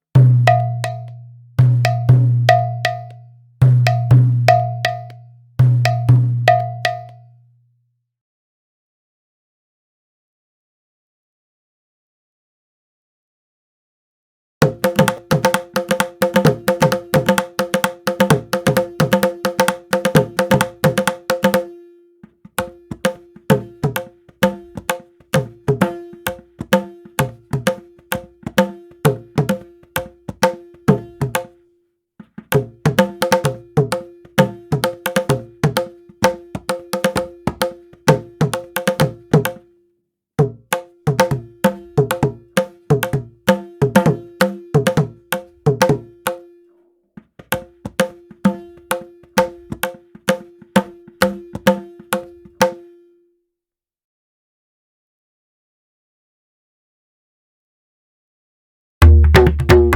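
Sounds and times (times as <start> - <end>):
hand drum strokes: 59.0 - 59.9.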